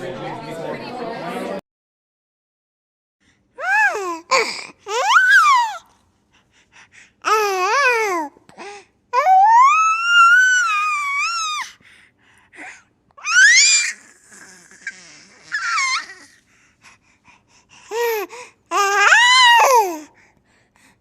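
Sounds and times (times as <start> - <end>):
baby squealing and crying: 3.6 - 5.9, 9.2 - 11.7, 13.2 - 16.4, 18.0 - 20.0.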